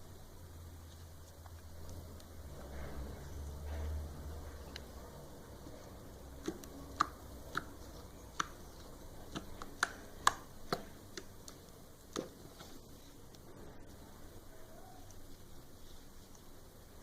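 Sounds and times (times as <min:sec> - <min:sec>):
slime clicking and popping: 0:06.3 - 0:12.4.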